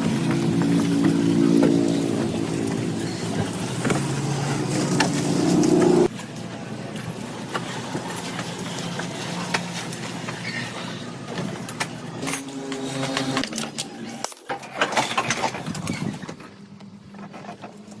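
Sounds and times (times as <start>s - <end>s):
motor humming: 0.0s - 6.1s.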